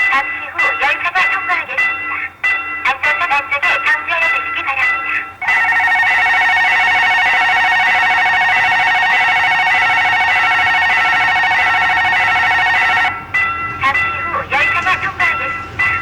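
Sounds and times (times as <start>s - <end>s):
level crossing warning bell: 0.0s - 16.0s
broken electronic tone sequence: 5.4s - 13.2s.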